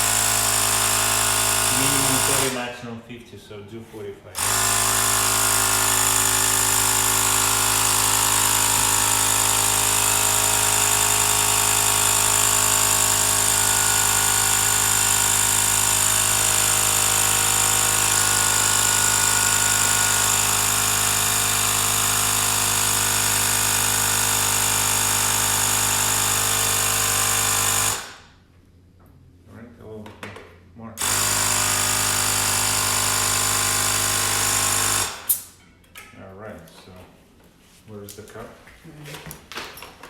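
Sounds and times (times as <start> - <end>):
tyre inflator compressor pumping: 0.0 - 2.8, 4.4 - 28.3, 31.0 - 35.6.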